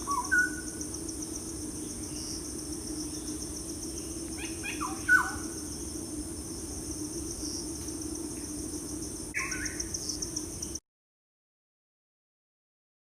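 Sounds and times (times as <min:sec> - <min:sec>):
birds calling: 0:00.0 - 0:00.8, 0:03.1 - 0:05.8, 0:09.4 - 0:10.7
insects trilling: 0:00.0 - 0:10.8.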